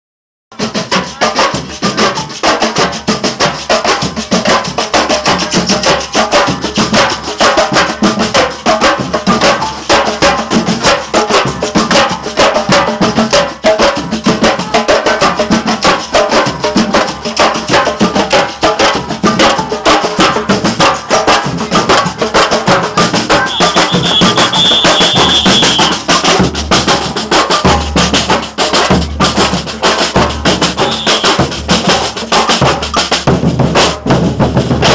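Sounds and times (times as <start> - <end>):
percussion band drumming: 0.5 - 34.9
high held tone: 23.4 - 26.0, 30.8 - 31.4.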